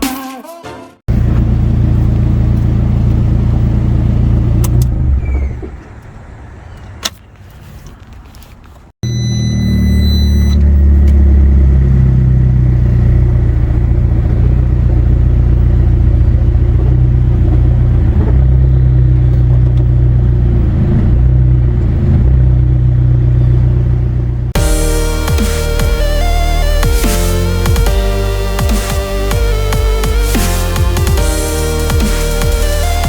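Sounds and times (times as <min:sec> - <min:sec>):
car engine running near idle: 0:01.1 - 0:04.9, 0:10.6 - 0:20.7
engine rattle: 0:10.6 - 0:24.8.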